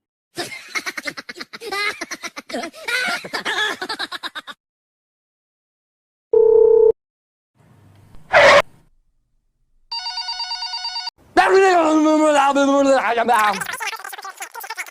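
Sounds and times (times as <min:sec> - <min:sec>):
squeaky cartoon voice chattering: 0:13.4 - 0:14.9.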